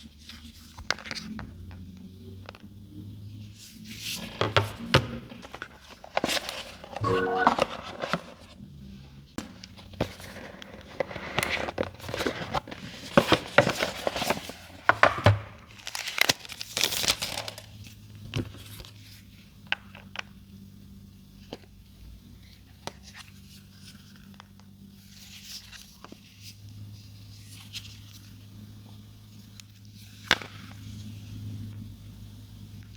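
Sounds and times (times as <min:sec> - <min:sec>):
packaging crinkling and tearing: 0:15.8 - 0:17.6.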